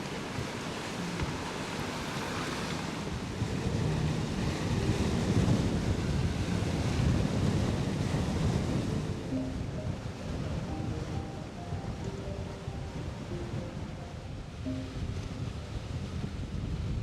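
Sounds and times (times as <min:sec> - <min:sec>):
rushing sea water: 0:00.0 - 0:17.0
wind buffeting microphone: 0:00.0 - 0:17.0.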